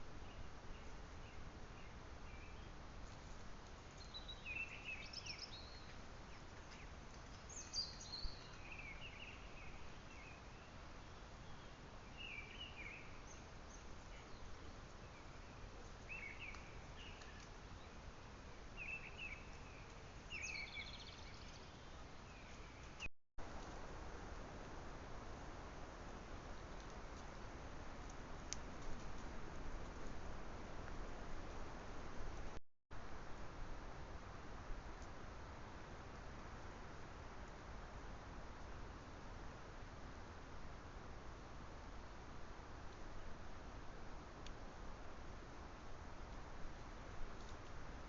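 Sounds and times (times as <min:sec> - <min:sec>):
microphone hiss: 0:00.0 - 0:48.0
small birds chirping: 0:00.2 - 0:18.1, 0:18.7 - 0:23.1.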